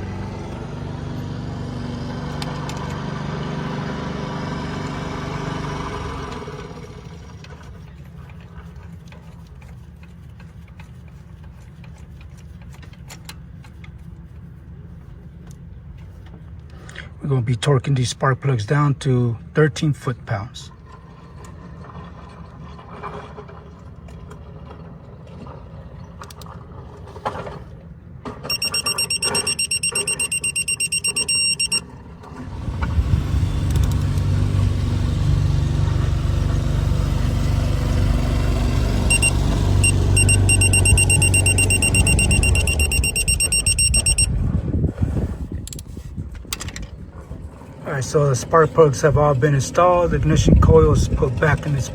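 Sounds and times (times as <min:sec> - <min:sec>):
car engine starting and idling: 0:00.0 - 0:09.8, 0:28.3 - 0:44.3
car warning chime beeping: 0:28.5 - 0:31.8, 0:39.1 - 0:44.3.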